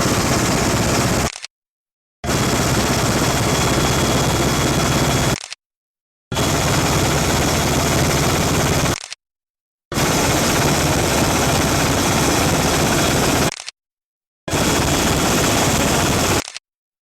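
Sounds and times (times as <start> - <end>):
helicopter rotor and engine: 0.0 - 1.4, 2.2 - 5.4, 6.3 - 9.0, 9.9 - 13.5, 14.5 - 16.4.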